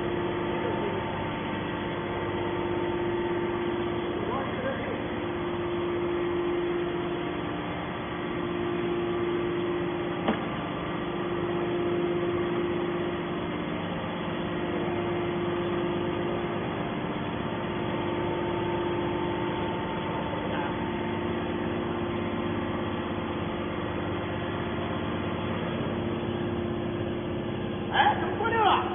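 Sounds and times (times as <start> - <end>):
baler machine hum: 0.0 - 28.9
sharp knock: 10.2 - 10.5.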